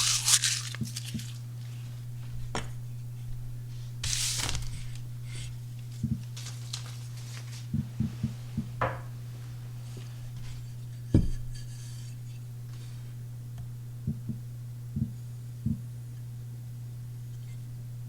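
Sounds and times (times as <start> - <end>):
hard drive humming: 0.0 - 18.0
soft thumps: 7.7 - 9.3, 10.0 - 11.8.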